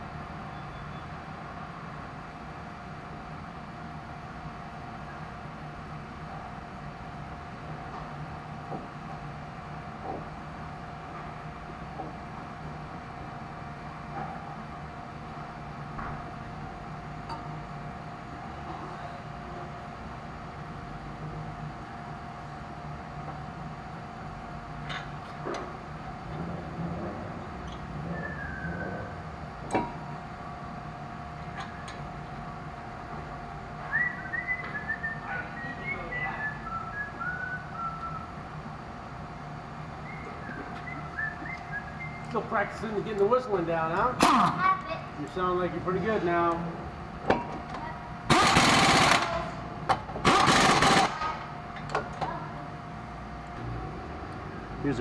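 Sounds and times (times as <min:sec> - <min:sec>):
person whistling a tune: 0:28.1 - 0:28.8, 0:33.8 - 0:38.3, 0:40.0 - 0:42.3
power tool hammering rattle: 0:48.3 - 0:52.0.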